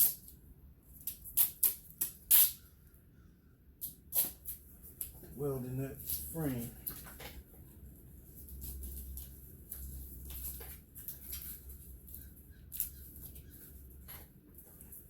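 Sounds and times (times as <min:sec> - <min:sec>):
hands handling clicks and rustles: 0:08.3 - 0:15.0.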